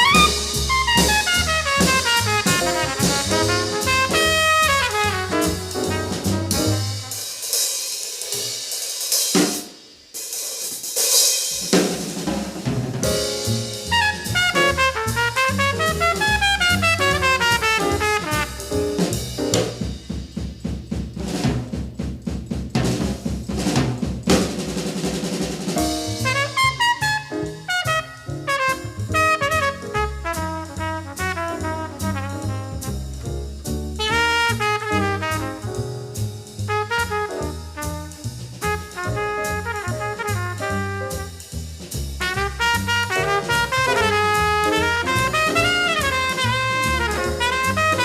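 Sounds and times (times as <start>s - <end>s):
drum kit hits: 0.0s - 7.6s, 8.2s - 9.8s, 10.7s - 48.0s
small-group jazz: 0.0s - 48.0s.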